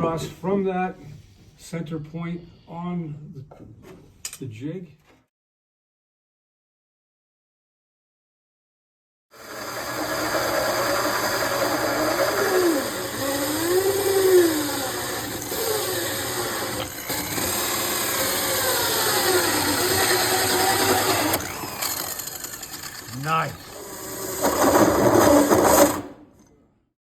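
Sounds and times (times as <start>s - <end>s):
power tool motor running: 9.4s - 26.1s.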